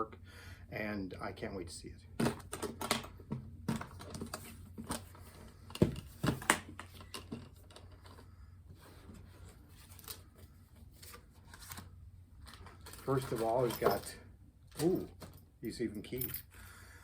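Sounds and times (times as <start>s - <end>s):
toy box packaging being handled: 2.2s - 14.1s.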